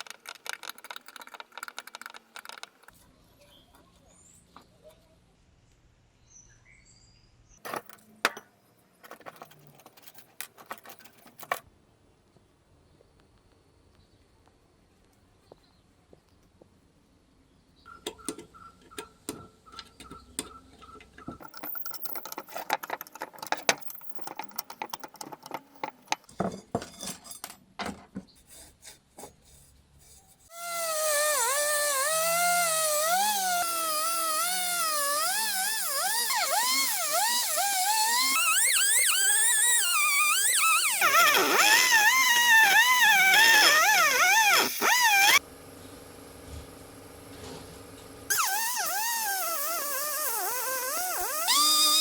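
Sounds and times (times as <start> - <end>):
small electric power tool whining: 30.5 - 45.5, 47.9 - 52.0.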